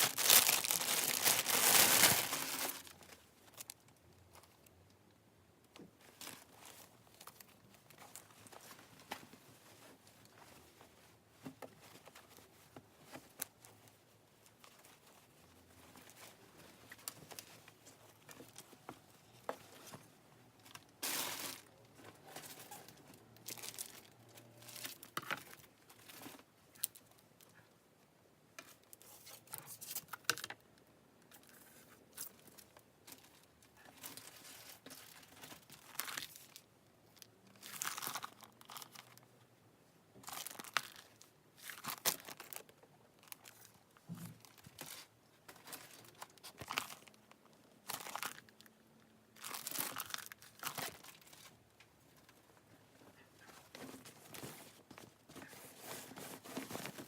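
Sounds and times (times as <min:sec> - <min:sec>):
packaging crinkling and tearing: 0:00.0 - 0:03.8, 0:21.0 - 0:21.7, 0:22.6 - 0:25.6, 0:37.6 - 0:39.2, 0:40.2 - 0:43.8, 0:44.4 - 0:47.2, 0:47.8 - 0:48.6, 0:49.4 - 0:51.5.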